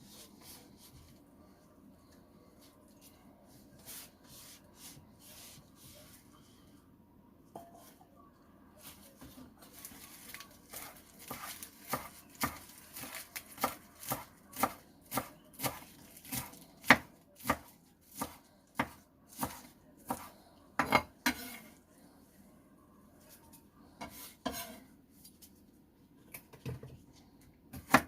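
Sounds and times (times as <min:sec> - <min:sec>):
knife chopping on cutting board: 0:11.3 - 0:21.6.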